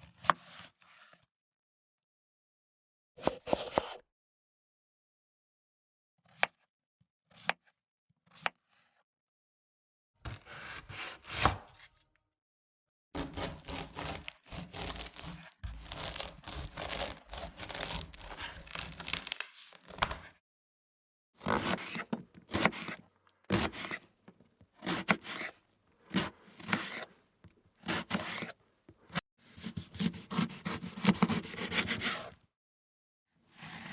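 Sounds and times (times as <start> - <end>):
knife scraping: 13.2 - 20.0, 21.4 - 24.1, 24.8 - 27.2, 27.8 - 32.4
kitchen knife cutting food: 13.2 - 20.3, 21.4 - 24.1, 24.8 - 27.2, 27.8 - 32.4.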